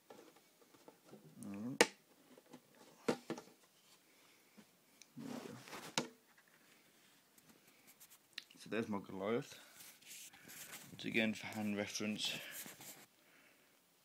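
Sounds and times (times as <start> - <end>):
scraping or rustling: 5.2 - 6.6, 9.7 - 13.1.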